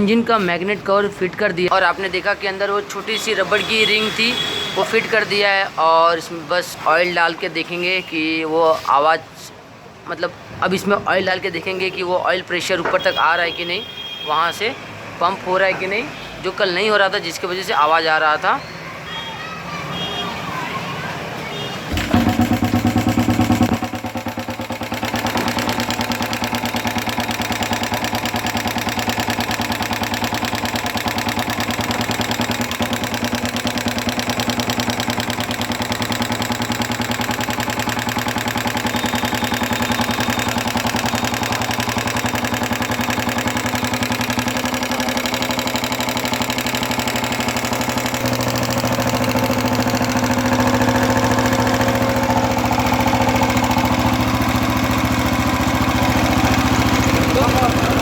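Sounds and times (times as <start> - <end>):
motorcycle engine idling: 21.9 - 58.0.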